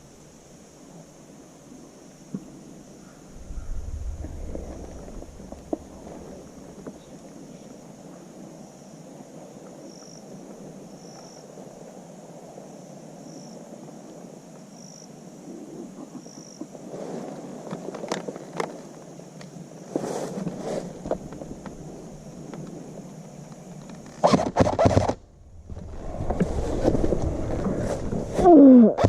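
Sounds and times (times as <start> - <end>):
rustling through brush: 19.8 - 29.0.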